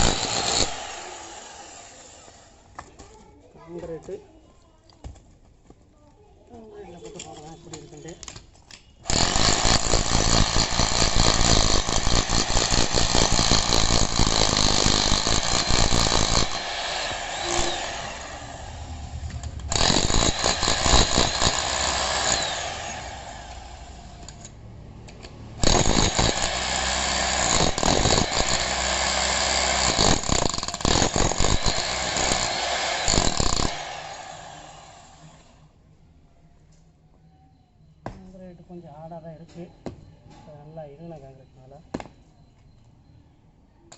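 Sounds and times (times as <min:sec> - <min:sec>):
demolition hammer chiselling concrete: 0:00.0 - 0:01.4, 0:09.1 - 0:18.4, 0:19.7 - 0:23.2, 0:25.6 - 0:34.7.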